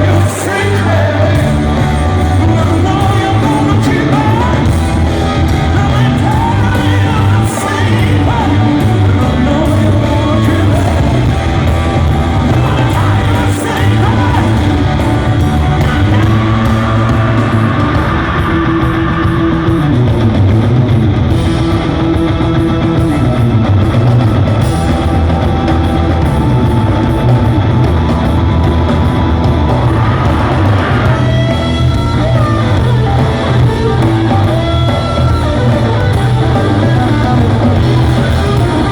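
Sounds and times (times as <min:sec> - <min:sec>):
man singing lead: 0:00.0 - 0:20.2
electric guitar: 0:00.0 - 0:38.9
rock band playing live: 0:00.0 - 0:38.9.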